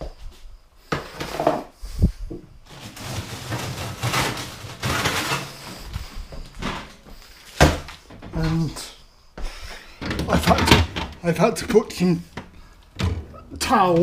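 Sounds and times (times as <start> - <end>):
fridge drawers clattering and scraping: 2.7 - 5.9, 6.5 - 8.7, 10.0 - 12.1, 12.9 - 14.0.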